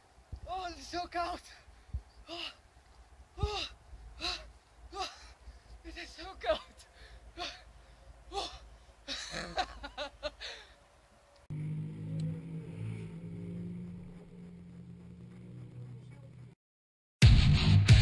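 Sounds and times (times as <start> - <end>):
background music with low drone: 11.5 - 16.6.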